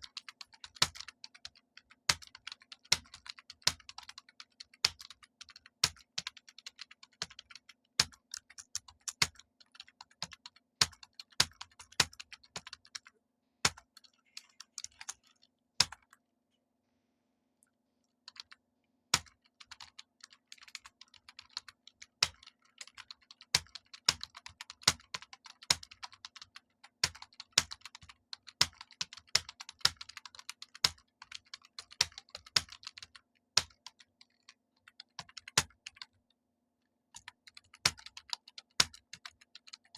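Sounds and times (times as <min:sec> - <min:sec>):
fast keyboard typing: 0:00.0 - 0:13.1, 0:13.7 - 0:16.1, 0:18.3 - 0:18.6, 0:19.2 - 0:36.2, 0:37.2 - 0:39.9.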